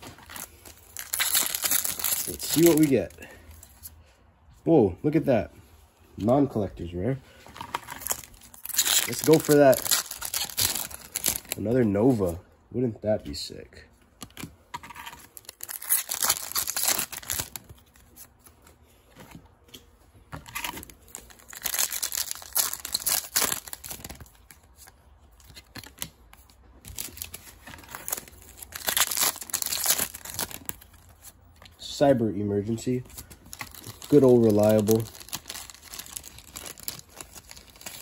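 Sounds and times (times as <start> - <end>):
foil wrappers tearing and crinkling: 0.0 - 3.2, 7.6 - 11.8, 15.0 - 18.4, 20.5 - 31.4, 33.1 - 38.0.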